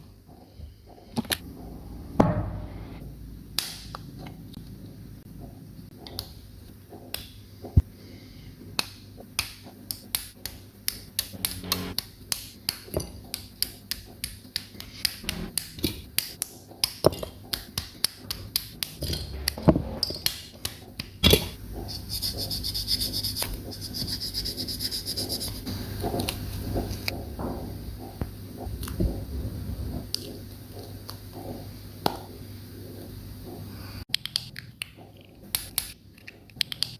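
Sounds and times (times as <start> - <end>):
plastic parts snapping clicks: 34.1 - 36.9.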